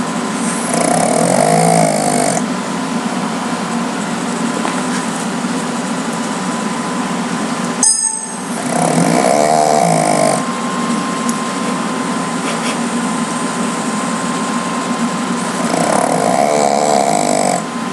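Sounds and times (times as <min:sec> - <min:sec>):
pet snoring: 0:00.4 - 0:02.5, 0:08.4 - 0:10.5, 0:15.4 - 0:17.7.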